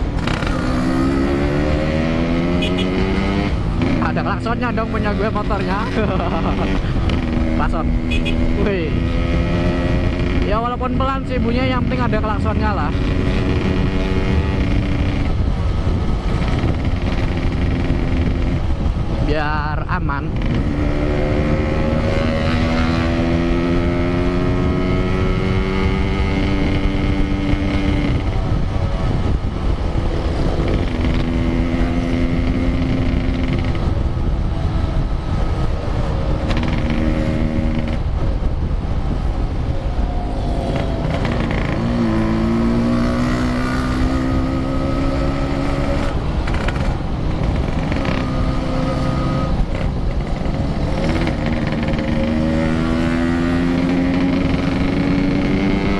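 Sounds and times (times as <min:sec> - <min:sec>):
wind rumble on microphone: 0:00.0 - 0:55.9
motorcycle engine pulling through gears: 0:35.4 - 0:38.0, 0:40.6 - 0:55.9.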